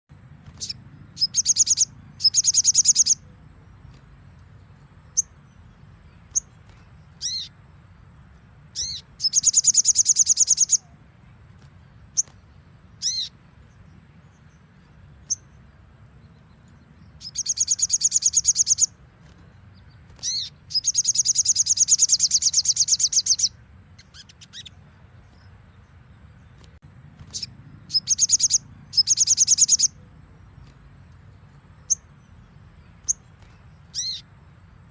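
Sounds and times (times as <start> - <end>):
bird trilling: 0.5 - 3.3, 7.2 - 7.6, 8.7 - 11.0, 13.0 - 13.4, 17.2 - 19.0, 20.2 - 24.8, 27.3 - 30.1, 33.0 - 34.3.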